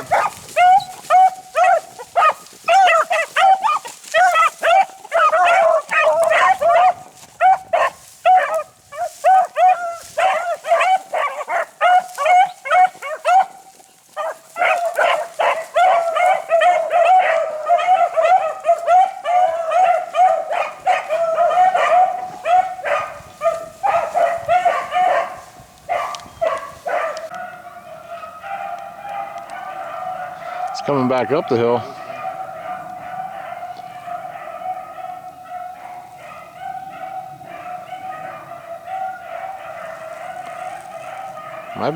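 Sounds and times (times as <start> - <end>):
beagles baying: 0.0 - 41.9.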